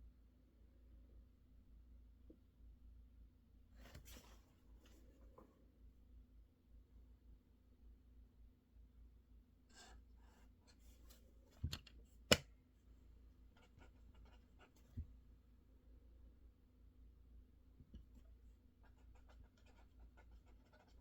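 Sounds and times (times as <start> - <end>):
faint steady hum: 0.0 - 21.0
light clicks and taps at desk: 11.5 - 12.5.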